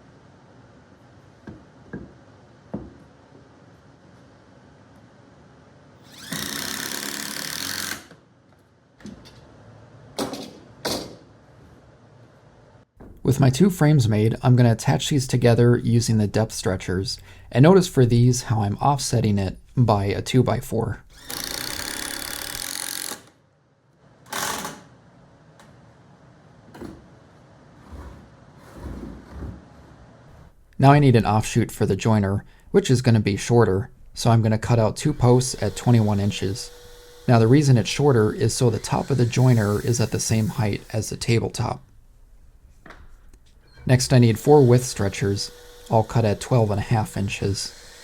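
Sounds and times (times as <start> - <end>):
power drill driving screw: 6.0 - 8.2, 21.1 - 23.4, 24.3 - 24.8, 35.1 - 41.2, 43.9 - 48.0.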